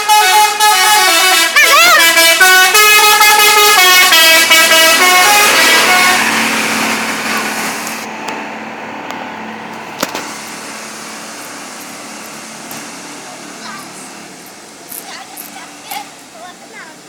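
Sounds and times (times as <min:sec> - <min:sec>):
multi-tone bus horn tune: 0:00.0 - 0:08.1
rushing noise: 0:00.8 - 0:16.4.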